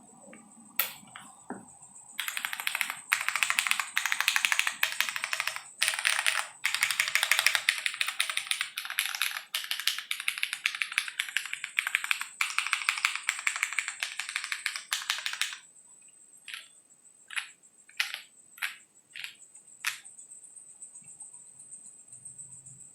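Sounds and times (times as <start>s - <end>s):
keyboard typing: 2.2s - 15.7s, 16.4s - 20.1s.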